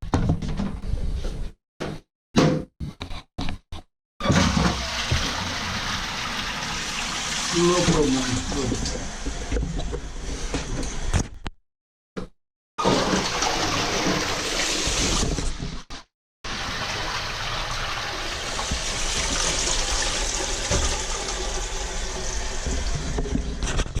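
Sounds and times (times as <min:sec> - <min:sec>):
toilet flushing and tank refilling: 0:04.2 - 0:09.7, 0:12.8 - 0:15.6, 0:16.5 - 0:23.7.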